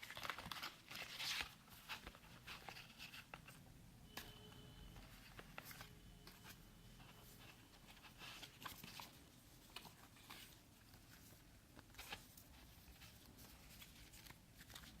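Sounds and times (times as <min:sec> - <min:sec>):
packaging rustles and clicks: 0:00.0 - 0:03.5.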